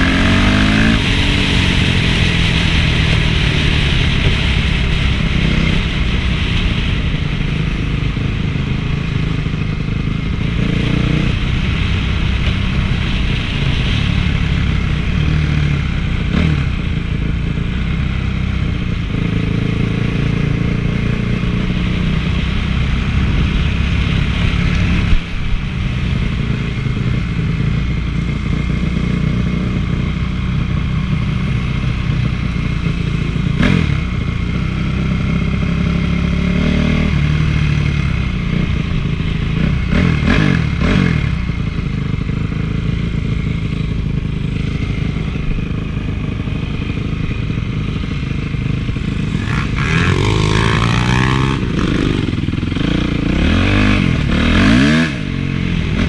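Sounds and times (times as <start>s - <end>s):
motocross engine revving: 0.0s - 6.9s, 42.7s - 56.0s.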